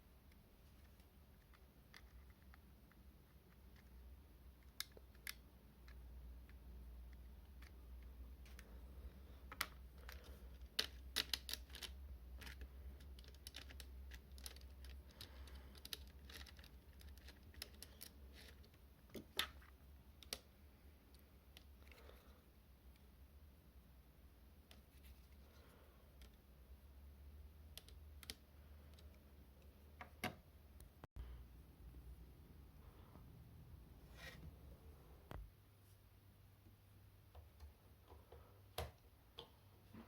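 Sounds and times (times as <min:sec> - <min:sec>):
small plastic parts clicking: 0:00.2 - 0:08.8, 0:09.4 - 0:20.5, 0:27.5 - 0:30.4.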